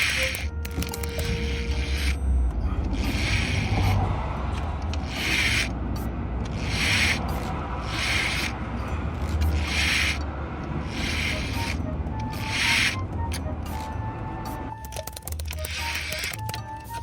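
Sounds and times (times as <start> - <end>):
hand rubbing strokes: 6.5 - 8.6, 9.4 - 10.2, 10.9 - 13.0.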